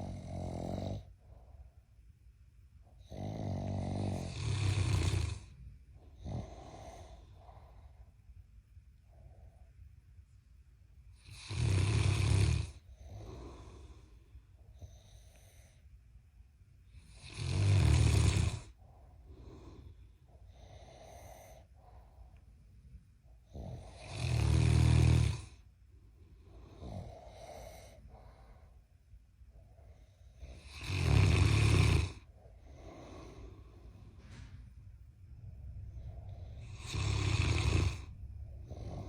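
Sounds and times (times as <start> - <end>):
loud snoring: 0.0 - 1.1, 3.0 - 5.5, 6.2 - 7.3, 11.2 - 13.8, 17.0 - 18.8, 23.5 - 25.6, 30.4 - 33.5, 36.0 - 39.0
quiet breaths: 0.0 - 39.0.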